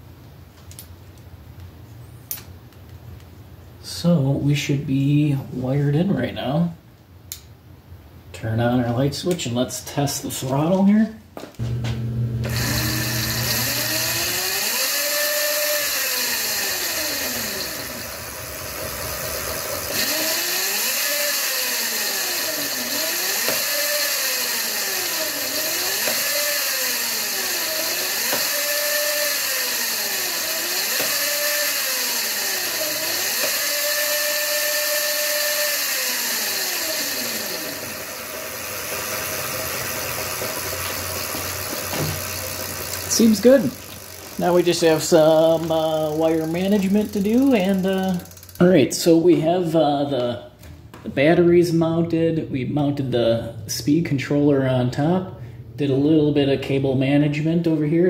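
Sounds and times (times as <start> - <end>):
electric motor whine: 11.6 - 48.6.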